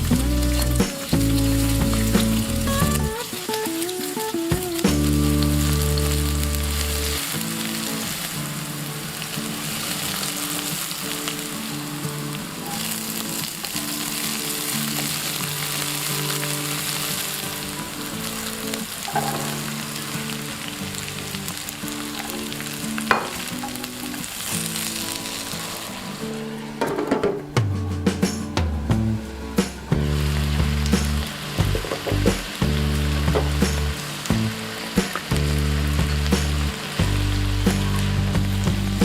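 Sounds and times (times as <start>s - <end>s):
background music: 0.0s - 11.5s, 15.6s - 39.0s
food sizzling in hot oil: 0.0s - 26.5s, 29.3s - 39.0s.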